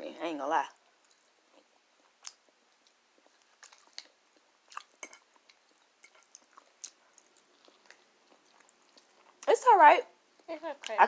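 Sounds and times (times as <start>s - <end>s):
person chewing food: 0.9s - 9.5s.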